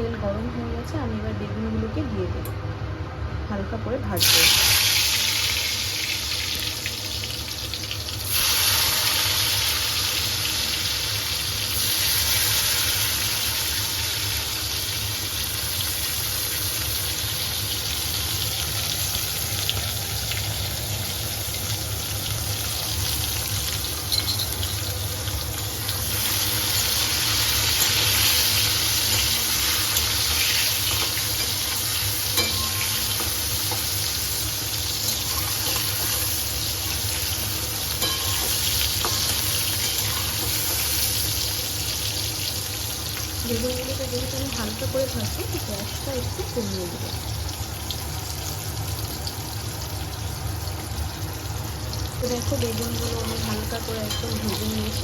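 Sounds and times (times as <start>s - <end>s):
vegetables sizzling in hot oil: 4.1s - 55.0s.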